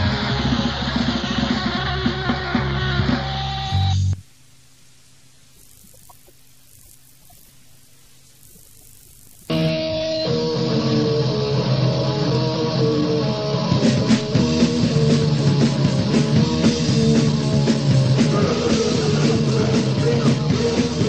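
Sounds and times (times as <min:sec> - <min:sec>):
drums: 0:00.0 - 0:04.4, 0:08.4 - 0:21.0
punk guitar riff: 0:09.5 - 0:21.0.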